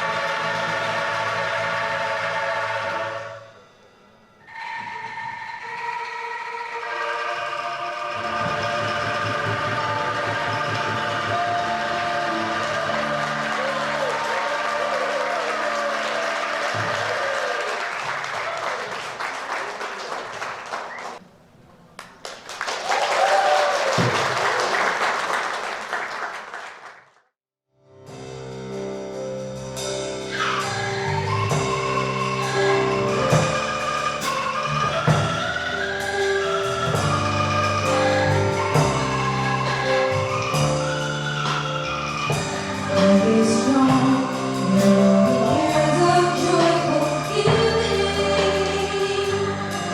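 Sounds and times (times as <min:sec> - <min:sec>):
shaken bamboo tubes music: 0:04.6 - 0:18.3, 0:30.2 - 0:49.9.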